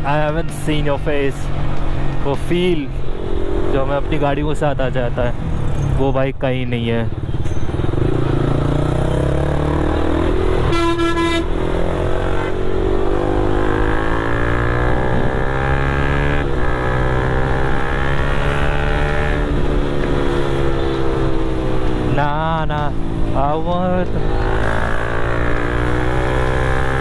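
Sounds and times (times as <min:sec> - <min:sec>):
traffic: 0:00.0 - 0:27.0
vehicle horn honk: 0:10.6 - 0:11.6.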